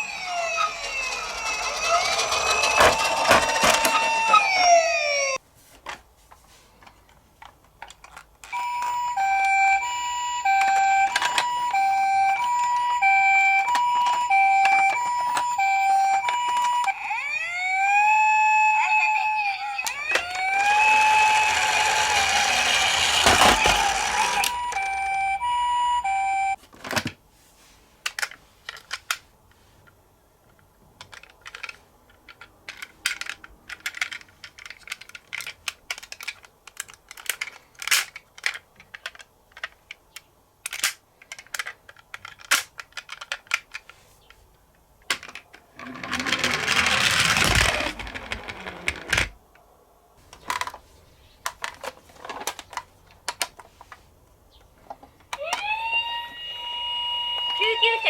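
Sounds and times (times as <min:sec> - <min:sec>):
toy siren wailing: 0:00.0 - 0:05.4, 0:08.5 - 0:26.6, 0:45.8 - 0:49.1, 0:55.3 - 0:58.0
plastic clicks and clatters: 0:06.8 - 0:09.0, 0:28.0 - 0:44.4, 0:45.0 - 0:49.4, 0:50.3 - 0:50.8, 0:51.4 - 0:55.7.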